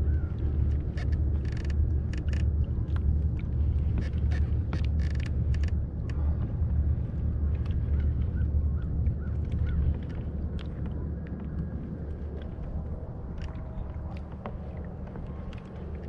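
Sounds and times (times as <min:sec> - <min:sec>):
fishing gear clicks: 0:00.5 - 0:06.3, 0:12.7 - 0:16.0
fishing gear rattling buzz: 0:01.0 - 0:02.5, 0:04.4 - 0:05.7.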